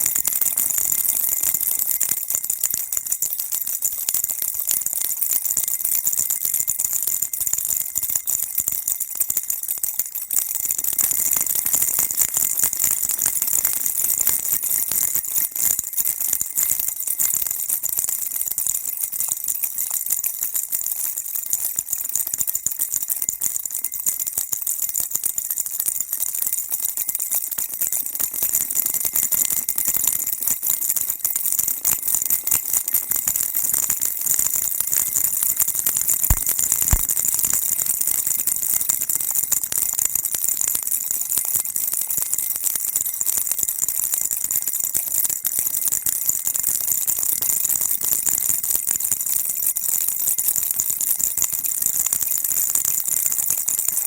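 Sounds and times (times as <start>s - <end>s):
baby rattle shaken: 32.7s - 40.2s.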